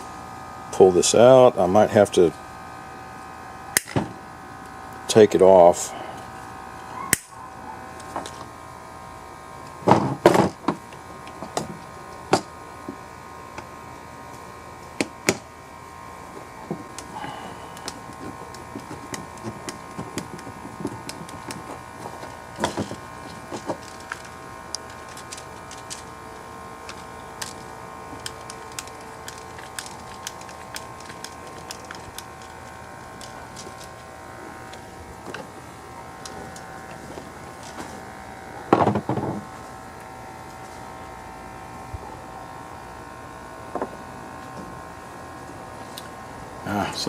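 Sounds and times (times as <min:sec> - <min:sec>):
steady background hum: 0:00.0 - 0:47.0
clicks and taps of parts: 0:17.8 - 0:26.1, 0:26.9 - 0:32.5.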